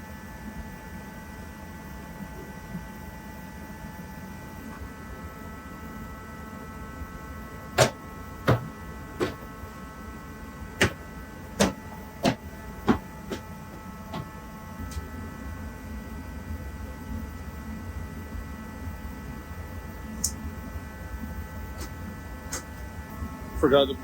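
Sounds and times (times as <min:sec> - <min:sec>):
steady hum: 0:00.0 - 0:24.0
sharp clicks and knocks: 0:07.8 - 0:09.4, 0:10.8 - 0:11.0, 0:11.6 - 0:13.5.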